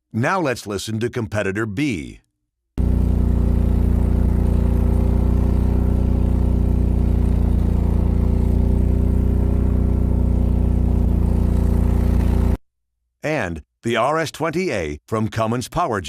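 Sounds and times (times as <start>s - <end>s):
generator engine running: 2.8s - 12.6s.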